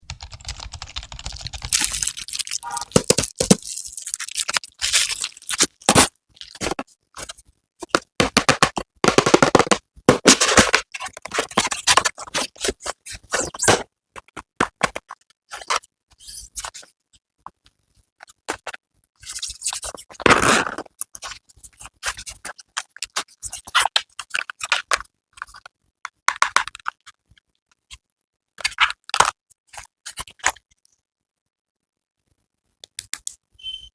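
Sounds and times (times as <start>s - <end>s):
packaging scraping and crinkling: 1.7s - 7.3s.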